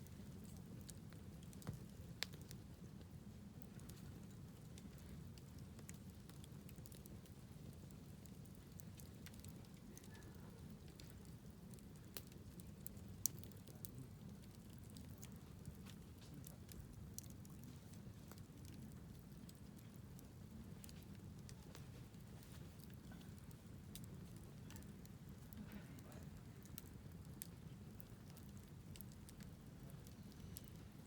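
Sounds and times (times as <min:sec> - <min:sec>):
wood fire crackling and popping: 0:00.0 - 0:31.0.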